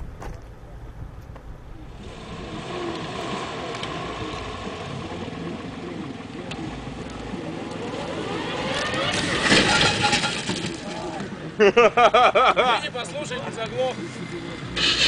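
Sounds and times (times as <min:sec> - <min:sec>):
vehicle engine running: 0:01.5 - 0:11.5, 0:13.2 - 0:15.0.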